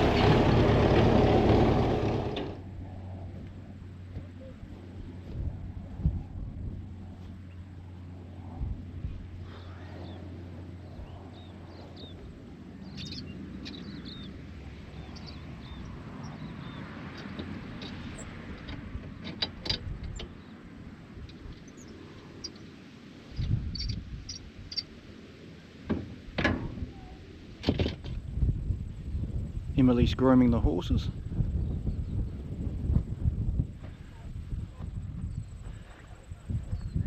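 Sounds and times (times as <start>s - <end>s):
tractor engine running: 0.0s - 5.8s, 10.5s - 21.8s
small birds chirping: 9.5s - 18.4s, 20.1s - 24.9s.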